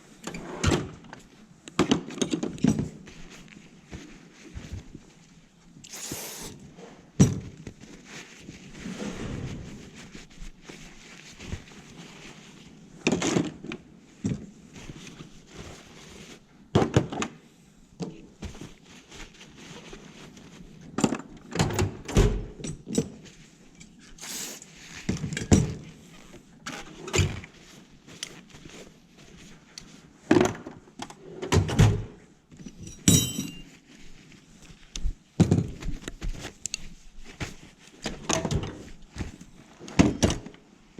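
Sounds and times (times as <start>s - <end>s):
metal tools clunking in toolbox: 32.7s - 33.7s
metallic ring: 32.9s - 33.7s.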